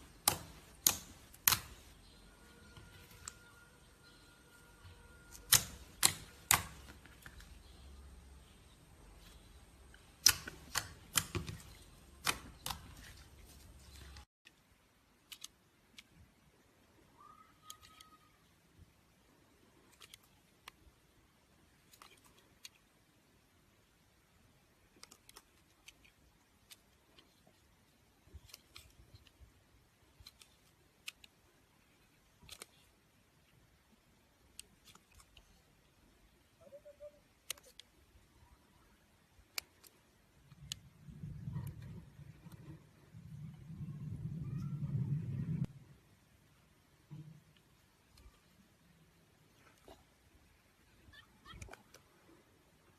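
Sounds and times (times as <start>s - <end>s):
background hum: 24.8s - 52.9s.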